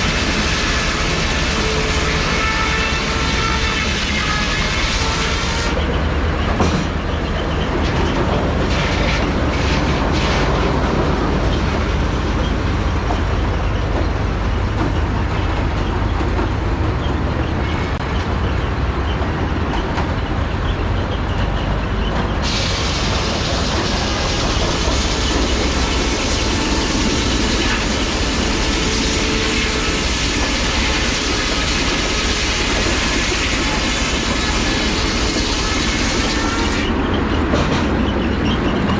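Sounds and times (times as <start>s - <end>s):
sawmill mechanical din: 0.0s - 38.9s
mechanical knocks: 5.8s - 11.7s.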